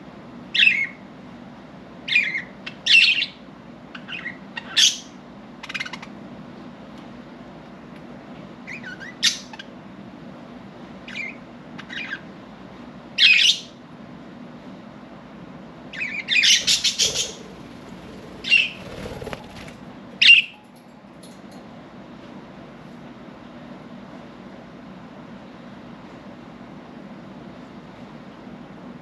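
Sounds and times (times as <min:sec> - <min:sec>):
budgerigars chirping and squawking: 0:04.0 - 0:06.1, 0:11.1 - 0:12.2, 0:16.0 - 0:20.5.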